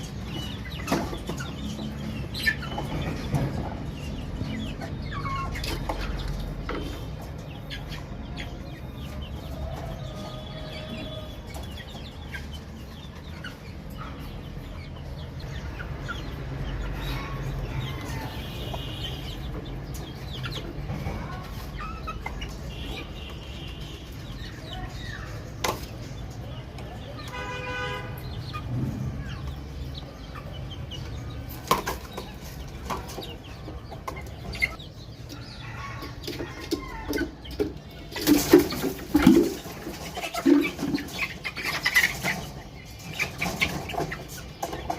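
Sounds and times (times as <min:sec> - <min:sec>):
baby chicks peeping: 0:00.0 - 0:44.9.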